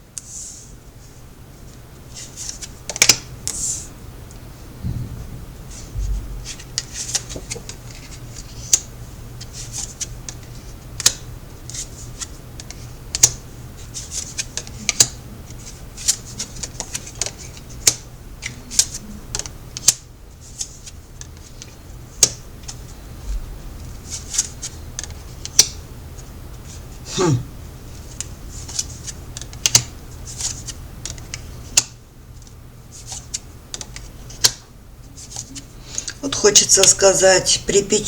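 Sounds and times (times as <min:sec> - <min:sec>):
faint steady hum: 0:00.0 - 0:38.0
cards snapping and rustling: 0:06.5 - 0:08.9.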